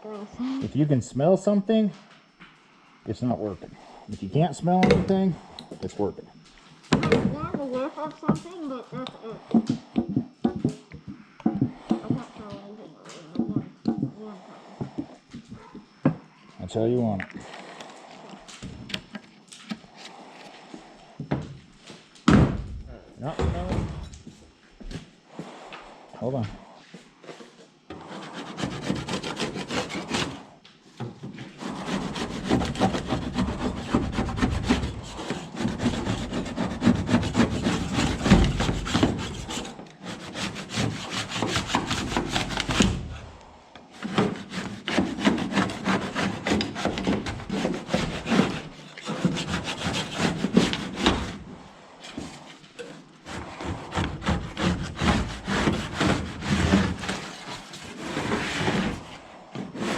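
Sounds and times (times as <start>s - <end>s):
scraper scraping paint off hull: 11.8s - 13.4s, 27.3s - 30.6s, 31.4s - 59.9s.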